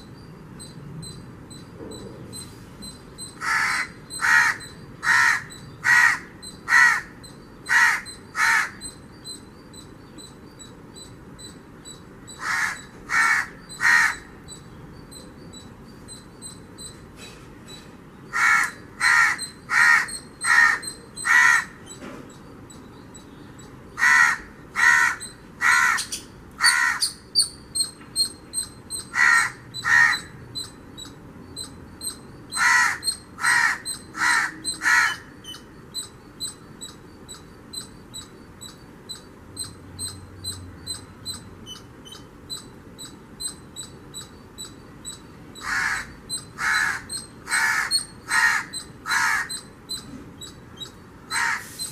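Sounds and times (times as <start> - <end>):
crow cawing: 3.4 - 8.8, 12.4 - 14.3, 18.3 - 21.8, 24.0 - 27.2, 29.1 - 30.3, 32.6 - 35.3, 45.6 - 49.6, 51.3 - 51.8.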